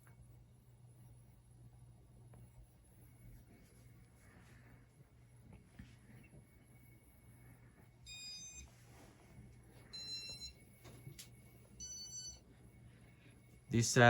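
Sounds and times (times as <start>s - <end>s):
faint low hum: 0.0s - 14.0s
short electronic beeps: 10.0s - 10.6s.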